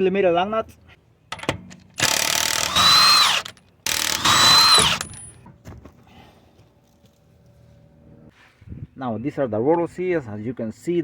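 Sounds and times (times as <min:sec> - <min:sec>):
impact wrench hammering: 0:02.0 - 0:05.2
impact wrench motor whine: 0:02.0 - 0:05.2.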